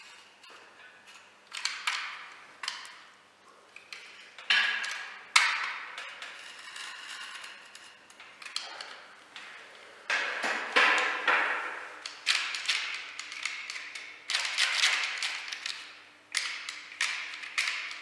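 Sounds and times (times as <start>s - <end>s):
sharp knocks and clatters: 8.2s - 12.7s.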